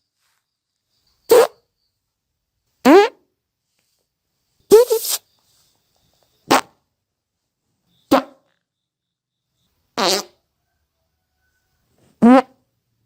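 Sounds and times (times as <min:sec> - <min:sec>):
person farting: 0:06.5 - 0:06.8, 0:10.0 - 0:10.4, 0:12.2 - 0:12.6.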